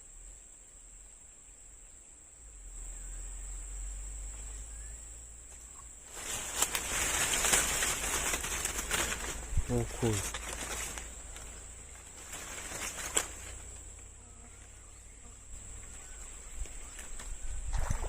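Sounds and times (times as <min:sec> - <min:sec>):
crickets trilling: 0:00.0 - 0:18.0
rustling crackling with clicks: 0:05.4 - 0:14.8.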